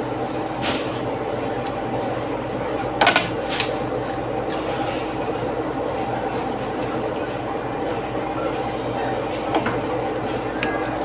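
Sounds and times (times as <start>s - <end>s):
steady machine hum: 0.0s - 11.0s.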